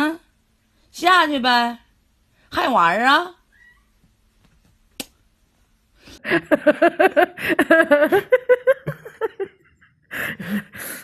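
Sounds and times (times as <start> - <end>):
person laughing: 6.2 - 11.0.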